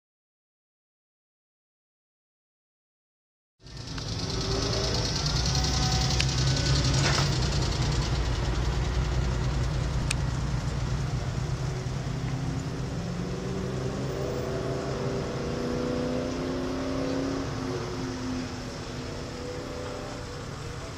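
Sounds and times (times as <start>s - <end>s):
street noise: 3.6s - 20.9s
vehicle engine rumbling: 3.6s - 20.9s.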